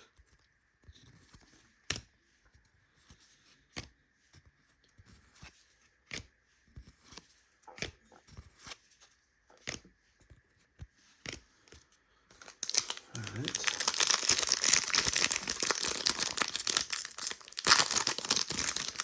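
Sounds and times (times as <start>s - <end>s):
cards flipped by hand: 5.2s - 10.4s, 11.1s - 11.5s.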